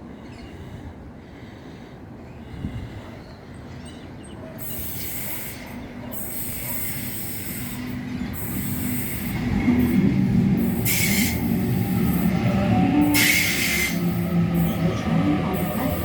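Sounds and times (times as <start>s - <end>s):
electric train rumble: 4.6s - 16.0s
wheel on rail hiss: 4.6s - 16.0s.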